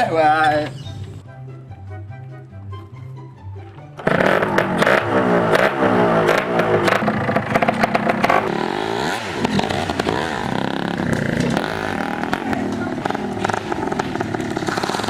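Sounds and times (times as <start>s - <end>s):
motorcycle engine revving: 4.0s - 15.0s
rattles and clicks: 9.1s - 15.0s.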